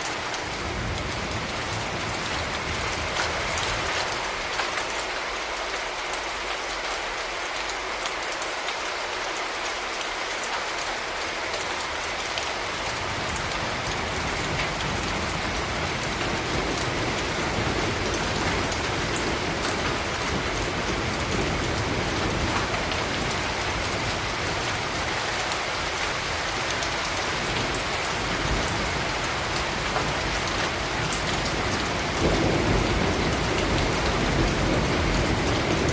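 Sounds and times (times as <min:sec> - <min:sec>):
steady rain hiss: 0:00.0 - 0:35.9.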